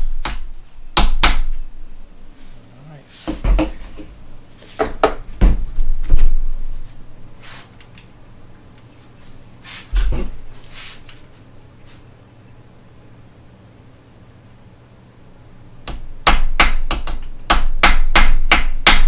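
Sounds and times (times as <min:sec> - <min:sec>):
heavy thump: 0:03.3 - 0:04.1, 0:04.8 - 0:06.6.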